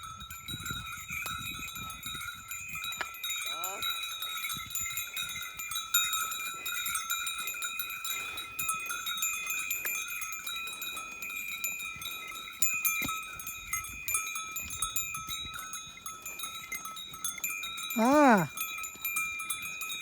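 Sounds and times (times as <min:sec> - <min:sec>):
bells on bulls jingling: 0:00.0 - 0:20.0.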